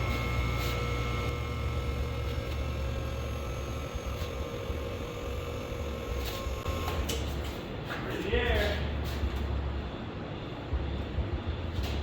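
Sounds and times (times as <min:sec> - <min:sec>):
hydraulic pump motor humming: 0:00.0 - 0:07.2.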